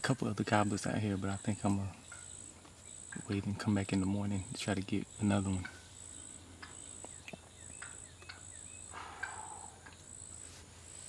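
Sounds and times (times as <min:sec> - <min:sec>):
pulsing insect trill: 0:00.4 - 0:11.0
faint bird chirps: 0:00.5 - 0:11.0
distant wild turkey gobbling: 0:05.6 - 0:10.2.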